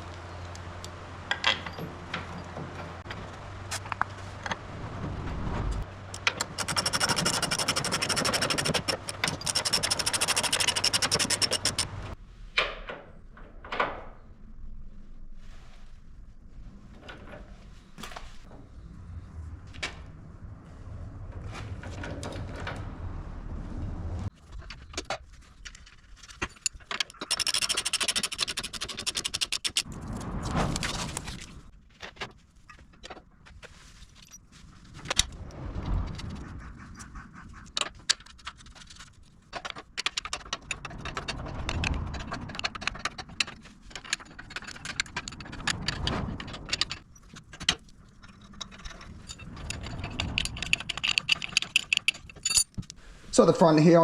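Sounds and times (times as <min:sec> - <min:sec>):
tools and steel parts clinking: 0:00.4 - 0:03.2, 0:06.1 - 0:12.1, 0:24.6 - 0:29.9, 0:38.2 - 0:53.0.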